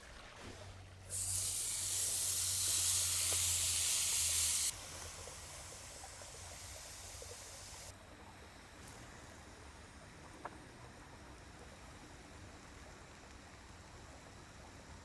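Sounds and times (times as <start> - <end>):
steak sizzling in a pan: 1.1 - 4.7.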